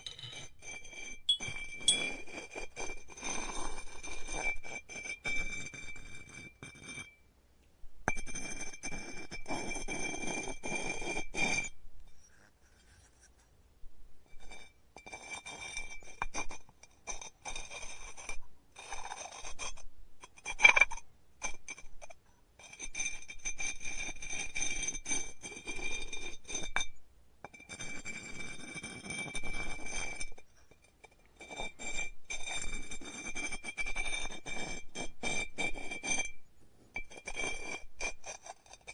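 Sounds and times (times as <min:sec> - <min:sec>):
light clinks: 0:00.0 - 0:00.5, 0:01.3 - 0:02.2
clay and tools scraping: 0:00.0 - 0:00.6, 0:01.2 - 0:02.2
sharp loud clink: 0:01.3 - 0:02.2.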